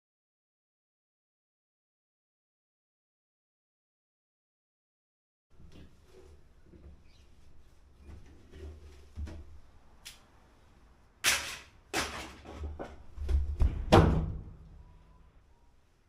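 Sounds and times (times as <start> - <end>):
knocks and thuds: 12.0 - 14.4.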